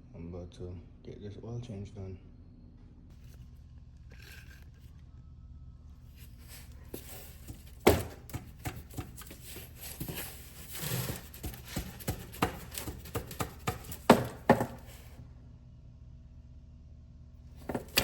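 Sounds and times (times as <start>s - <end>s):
tools and parts clattering: 6.3s - 15.2s, 17.6s - 18.0s
loud knocks: 7.0s - 15.0s.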